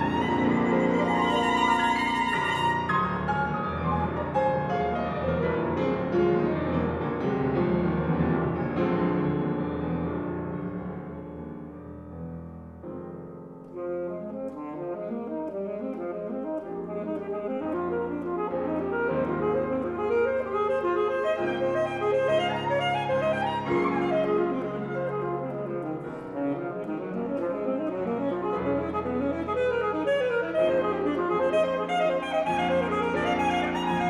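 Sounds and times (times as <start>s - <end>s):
alto saxophone: 0.0s - 4.3s, 13.6s - 34.0s
piano: 0.0s - 34.0s.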